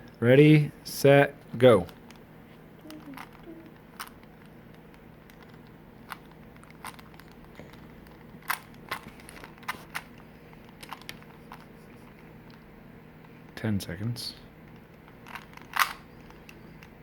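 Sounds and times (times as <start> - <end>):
puzzle cube clicking: 2.8 - 12.6, 14.7 - 16.9.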